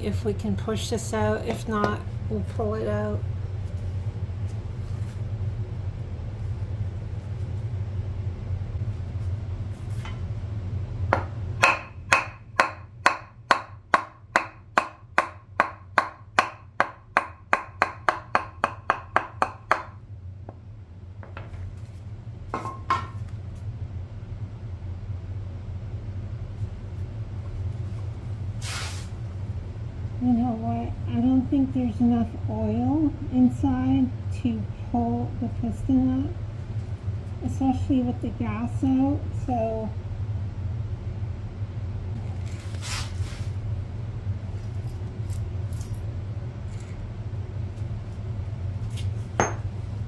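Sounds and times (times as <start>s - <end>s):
hammer striking metal piston: 11.6s - 19.9s.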